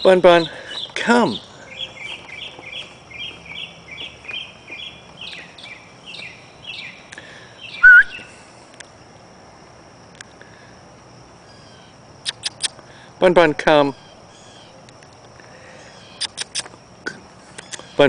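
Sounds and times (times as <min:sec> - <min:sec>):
bird chirping: 0:00.0 - 0:08.3, 0:11.5 - 0:12.7, 0:13.9 - 0:14.8, 0:15.6 - 0:16.8, 0:17.5 - 0:18.0
loud rising bird call: 0:07.7 - 0:08.3
faint steady high tone: 0:07.8 - 0:08.3.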